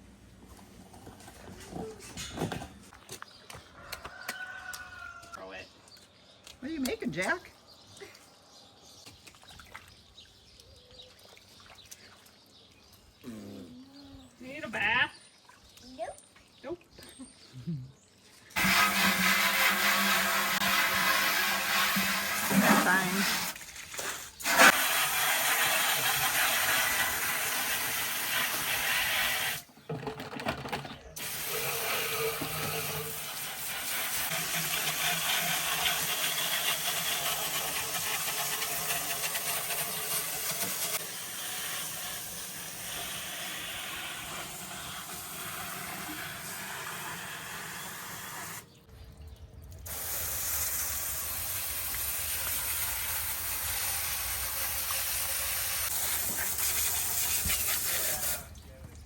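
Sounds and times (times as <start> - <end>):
water hissing: 18.6 - 29.7, 31.2 - 48.8, 49.8 - 58.5.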